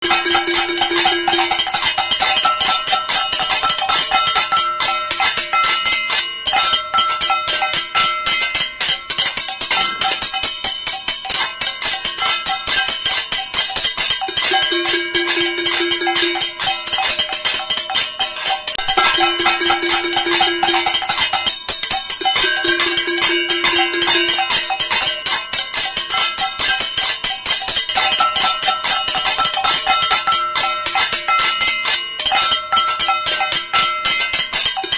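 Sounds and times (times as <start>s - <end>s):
crowd beating pots and pans: 0.0s - 34.9s.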